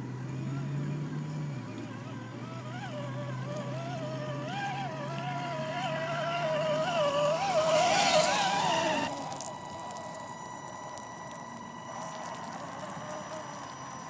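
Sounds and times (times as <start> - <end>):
electric motor whining: 0.0 - 14.0
splashing water: 3.5 - 14.0.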